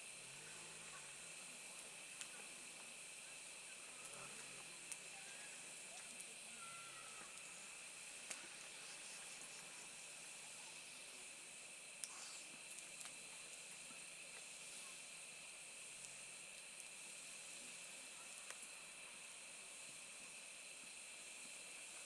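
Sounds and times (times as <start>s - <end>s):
fire crackles: 0.0s - 22.0s
wood fire hissing: 0.0s - 22.0s.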